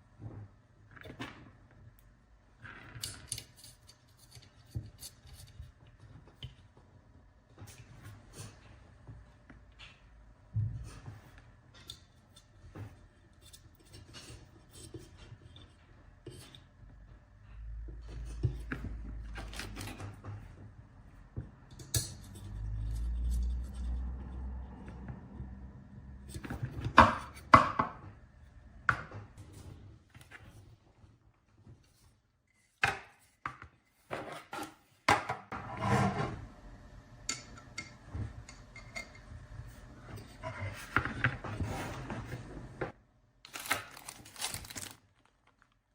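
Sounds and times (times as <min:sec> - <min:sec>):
small tools clicking and tapping: 0:02.9 - 0:05.7.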